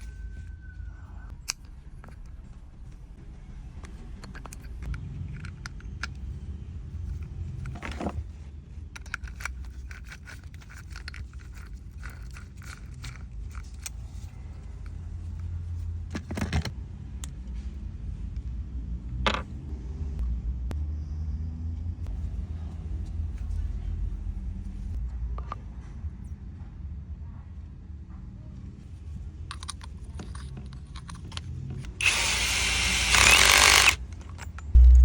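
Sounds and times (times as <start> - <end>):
low rumble: 20.0 - 25.3, 34.6 - 35.0.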